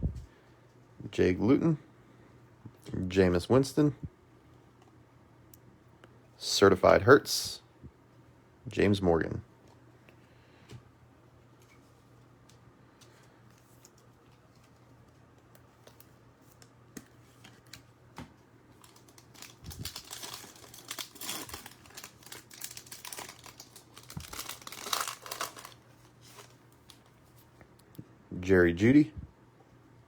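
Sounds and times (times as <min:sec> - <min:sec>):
foil wrapper tearing and crinkling: 0:18.8 - 0:27.0.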